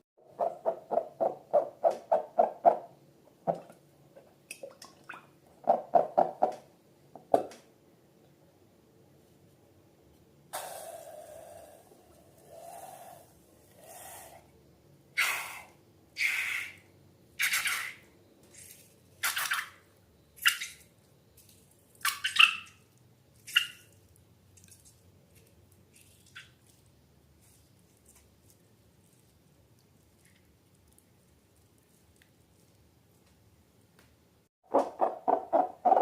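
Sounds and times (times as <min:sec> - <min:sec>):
slime squelching: 0:23.3 - 0:33.3.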